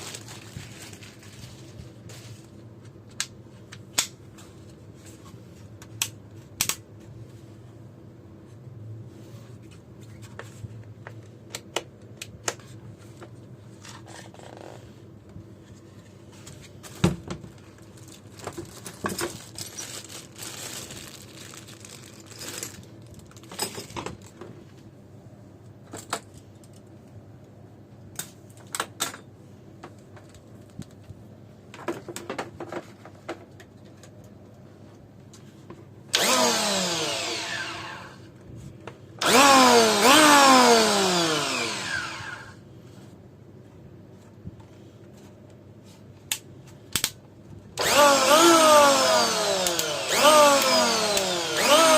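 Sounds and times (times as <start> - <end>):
packaging rustling: 0.0 - 2.8, 16.6 - 24.4.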